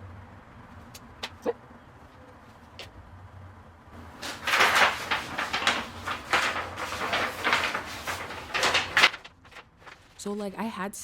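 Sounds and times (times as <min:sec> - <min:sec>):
paper crinkling and rustling: 0:04.0 - 0:10.3.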